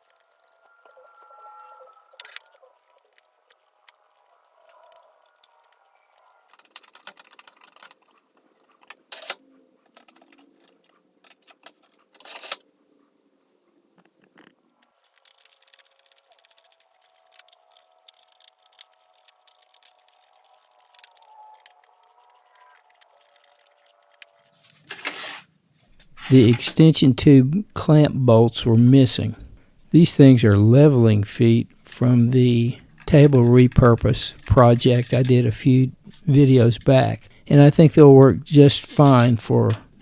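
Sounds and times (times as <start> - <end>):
metal parts clicking and clinking: 0.0 - 12.7, 14.1 - 25.2, 25.9 - 26.8, 32.8 - 37.4, 38.8 - 40.0.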